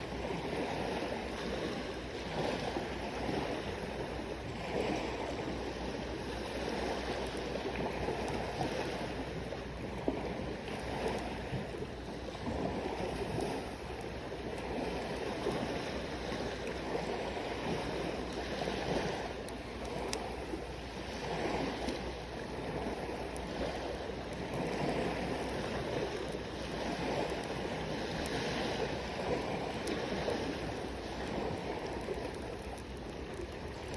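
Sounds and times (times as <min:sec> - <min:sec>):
campfire popping: 0:00.0 - 0:33.9
sea waves washing ashore: 0:00.0 - 0:33.9.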